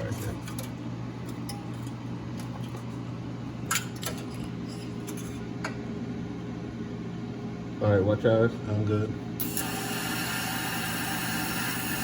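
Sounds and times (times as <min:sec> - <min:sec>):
welding machine humming: 0:09.4 - 0:12.0.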